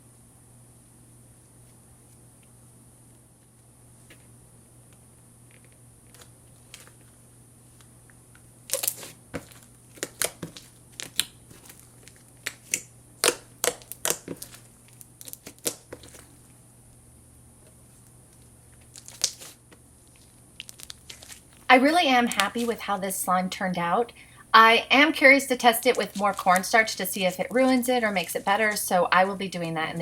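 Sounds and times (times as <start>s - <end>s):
slime popping and crackling: 8.6s - 16.3s, 18.8s - 22.9s.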